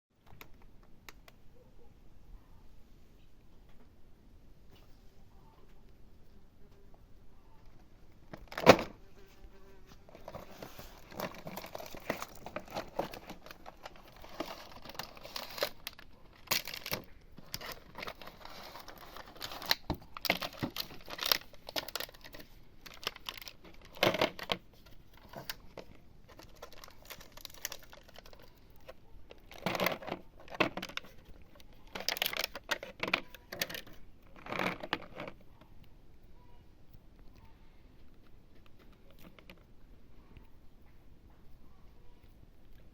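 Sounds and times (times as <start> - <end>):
plastic packaging crinkling: 8.2 - 9.0, 9.9 - 35.6.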